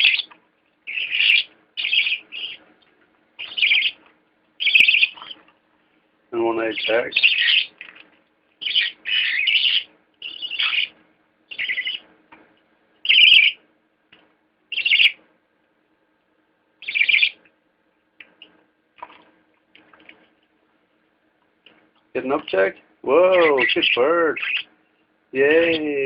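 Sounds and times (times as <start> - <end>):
budgerigar chicks calling: 0.0 - 0.3, 0.9 - 2.6, 3.4 - 4.0, 4.6 - 5.4, 6.5 - 7.8, 8.6 - 12.1, 13.0 - 13.6, 14.7 - 15.2, 16.8 - 17.4, 22.3 - 24.7, 25.4 - 25.9.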